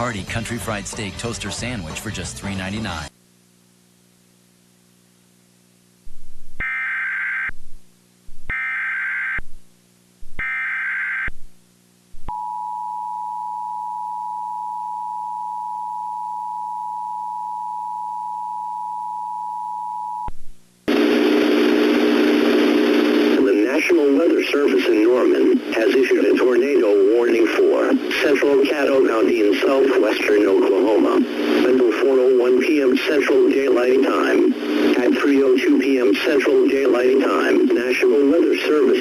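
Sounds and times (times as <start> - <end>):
faint steady hum: 3.1 - 39.0
loud noisy sound: 20.9 - 38.2.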